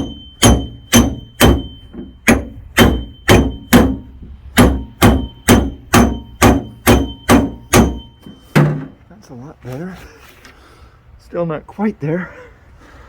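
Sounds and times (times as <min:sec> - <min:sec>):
hammer striking sheet metal: 0:00.0 - 0:09.0.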